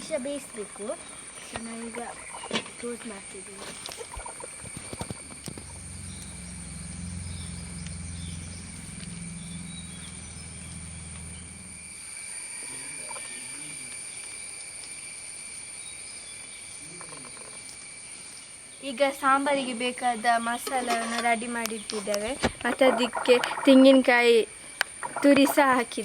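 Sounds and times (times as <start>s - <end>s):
insects calling: 0.0s - 26.0s
low hum: 4.2s - 12.1s.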